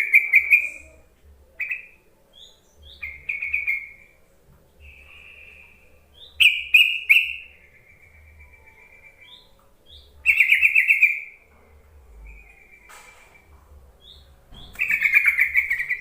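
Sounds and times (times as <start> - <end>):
bird chirping: 0.0 - 16.0.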